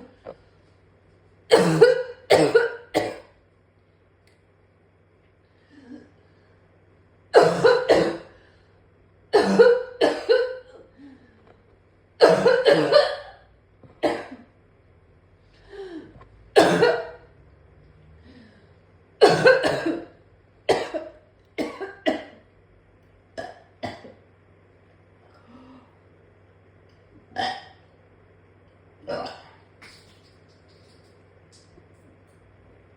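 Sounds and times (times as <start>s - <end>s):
person coughing harshly: 1.5s - 3.3s, 7.4s - 8.4s, 9.4s - 10.7s, 12.2s - 13.4s, 14.0s - 14.4s, 16.6s - 17.2s, 19.2s - 22.4s, 23.4s - 24.2s.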